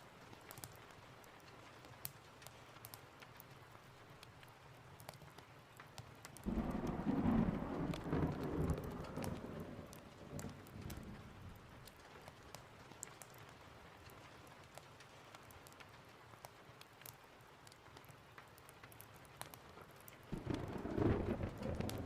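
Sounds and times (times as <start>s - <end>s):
steady rain: 0.0s - 22.0s
faint sharp crackles: 0.2s - 22.0s
thunder rumble: 6.4s - 11.8s, 20.3s - 22.0s.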